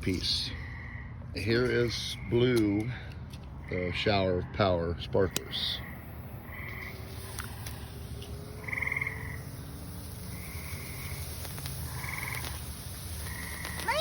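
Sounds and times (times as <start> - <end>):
frogs pulsed trills: 0.2 - 2.6, 5.5 - 14.0.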